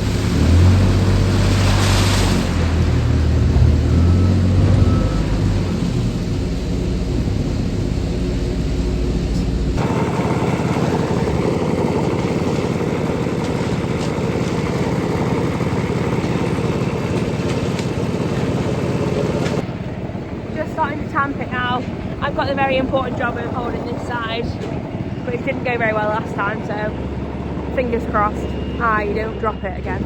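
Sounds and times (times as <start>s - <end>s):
machinery engine running: 0.0s - 30.0s.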